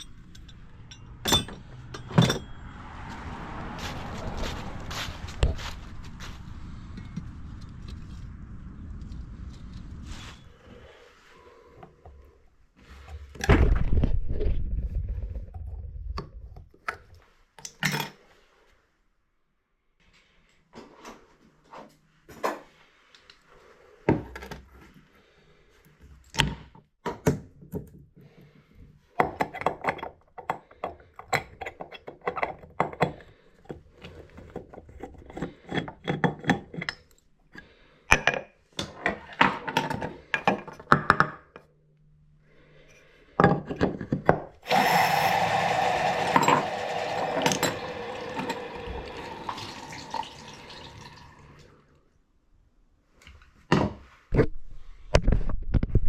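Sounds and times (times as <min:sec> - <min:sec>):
metal tools clinking on valve: 0:00.0 - 0:02.6
water rushing: 0:44.7 - 0:51.8.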